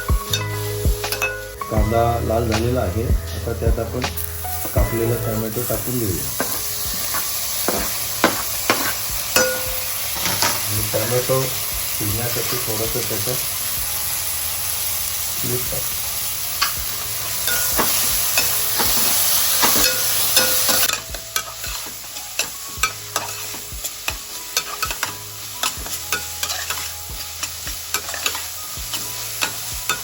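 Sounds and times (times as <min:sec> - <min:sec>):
onion and tomato sizzling in oil: 0:00.0 - 0:30.0
spoon scraping against pan: 0:17.5 - 0:30.0.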